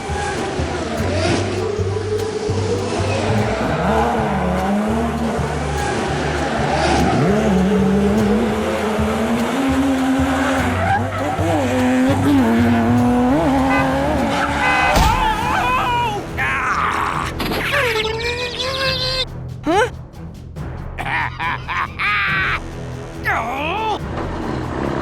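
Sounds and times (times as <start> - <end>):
cartoon car engine revving: 0.0 - 15.8.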